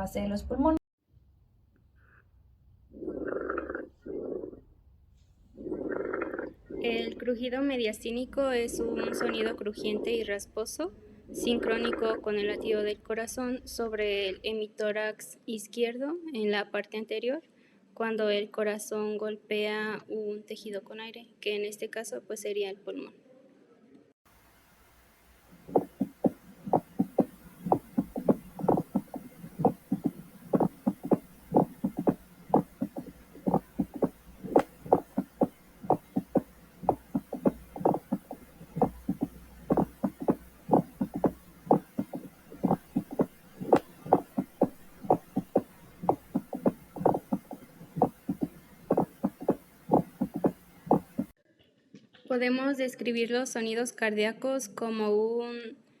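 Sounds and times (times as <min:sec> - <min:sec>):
crunching rasping chest sound: 0:25.6 - 0:51.3.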